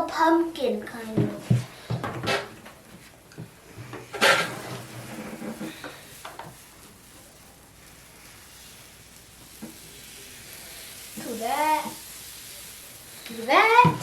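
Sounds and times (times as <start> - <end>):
kitchen utensils and dishes clattering: 2.0 - 2.6, 3.9 - 6.6
pancake batter sizzling on griddle: 2.3 - 14.0.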